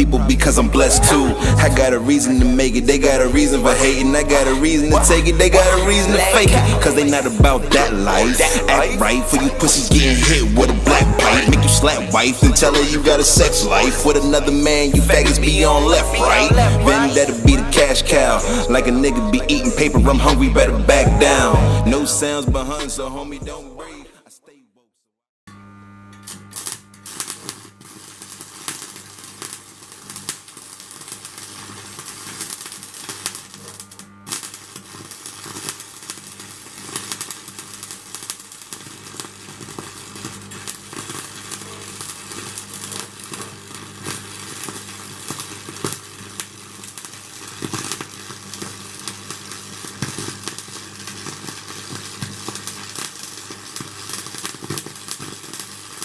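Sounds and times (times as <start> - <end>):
steady low hum: 0.0 - 23.8
welding arc crackling: 0.0 - 23.9, 25.5 - 56.0.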